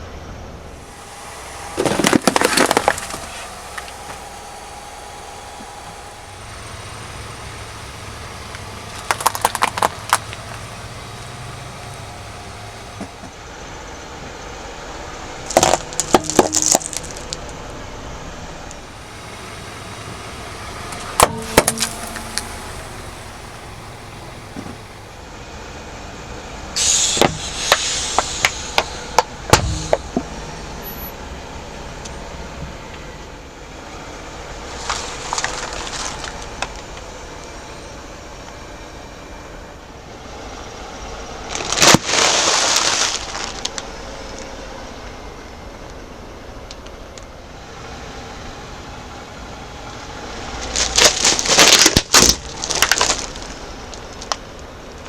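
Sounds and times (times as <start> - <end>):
car engine running: 0.0 - 55.0
tyre crushing brittle objects: 0.8 - 13.3, 15.5 - 17.4, 34.7 - 36.8, 41.5 - 43.8, 50.6 - 54.4.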